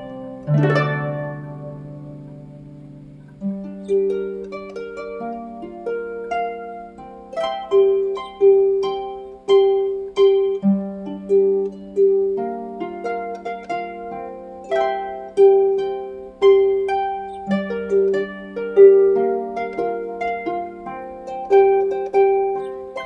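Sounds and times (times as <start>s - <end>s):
low sustained notes: 0.0s - 23.0s
plucked string melody: 0.0s - 23.0s.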